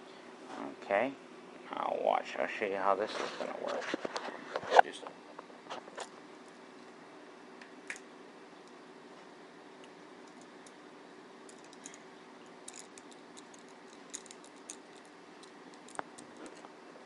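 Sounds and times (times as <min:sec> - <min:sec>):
faint steady hum: 0:00.0 - 0:17.0
tripod parts clicking: 0:12.7 - 0:16.6.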